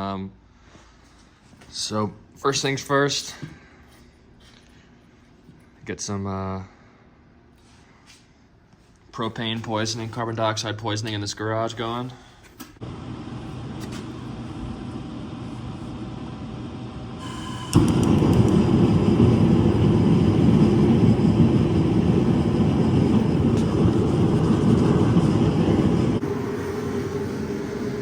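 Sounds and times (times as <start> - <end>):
gas heater burning: 9.2 - 28.0
igniter clicks: 17.6 - 18.8.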